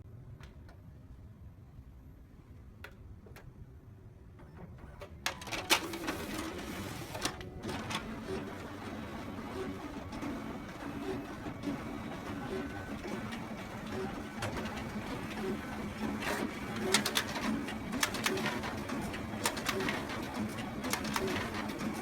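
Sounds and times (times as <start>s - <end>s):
sharp photocopier clicks: 5.3s - 9.4s, 11.5s - 22.0s
photocopier humming: 5.3s - 22.0s.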